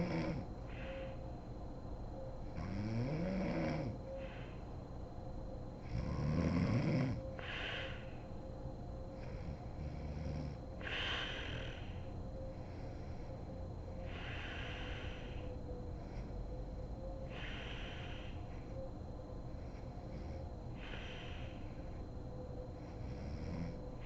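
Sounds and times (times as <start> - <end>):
woman snoring: 0.0 - 0.5, 2.6 - 4.0, 5.8 - 8.0, 9.2 - 12.0, 22.9 - 23.8
breathy hissing breaths: 0.0 - 24.0.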